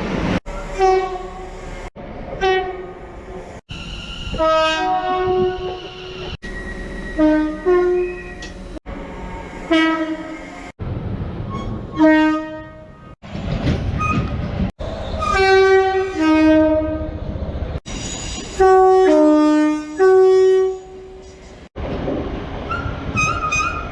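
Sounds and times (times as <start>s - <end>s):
rumble of moving trains: 0.0s - 23.9s
train horn blasts: 0.7s - 1.5s, 4.3s - 5.8s, 7.2s - 8.4s, 9.7s - 10.4s, 12.0s - 13.0s, 15.2s - 17.1s, 18.6s - 21.2s.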